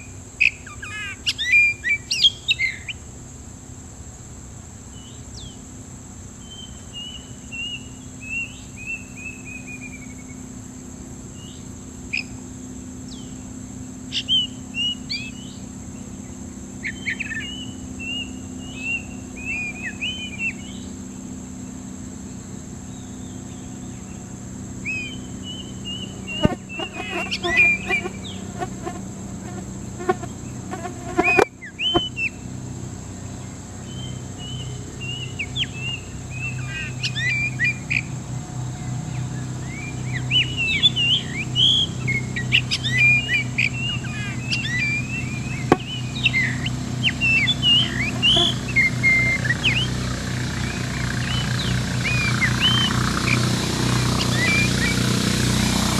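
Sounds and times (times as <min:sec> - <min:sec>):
high insect drone: 0:00.0 - 0:55.9
bird chirps and trills: 0:22.9 - 0:32.4, 0:39.2 - 0:55.2
sharp knocks: 0:26.4 - 0:27.0, 0:45.7 - 0:45.9.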